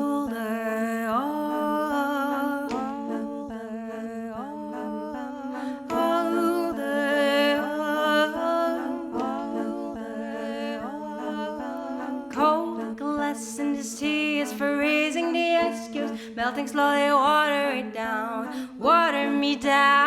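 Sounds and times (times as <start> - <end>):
woman singing wordless harmonies: 0.0 - 20.0
plucked mandolin: 5.9 - 13.9.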